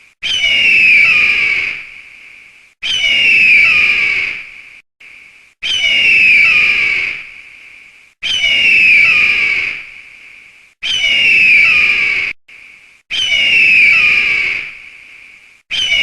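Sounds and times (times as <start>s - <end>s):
eagle cry: 0.2s - 1.9s, 2.8s - 4.4s, 5.6s - 7.3s, 8.2s - 9.8s, 10.8s - 12.3s, 13.1s - 14.8s, 15.7s - 16.0s.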